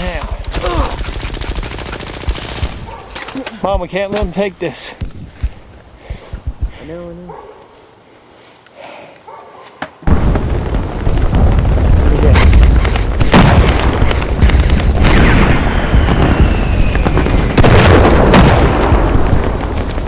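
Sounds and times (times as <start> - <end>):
wind buffeting microphone: 5.0 - 7.0, 10.1 - 20.0.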